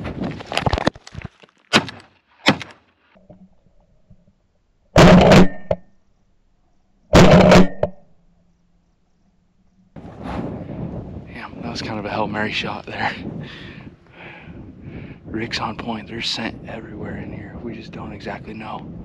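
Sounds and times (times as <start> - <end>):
shotgun shots: 5.0 - 5.8, 7.2 - 7.9.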